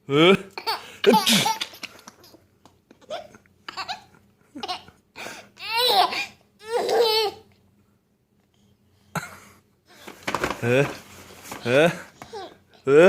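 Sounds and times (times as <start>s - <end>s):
baby laughing: 0.4s - 4.9s, 5.6s - 7.5s.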